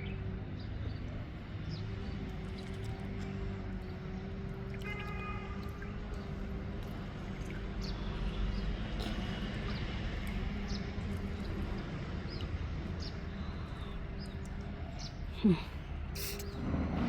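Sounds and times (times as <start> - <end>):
small birds chirping: 5.6 - 16.6.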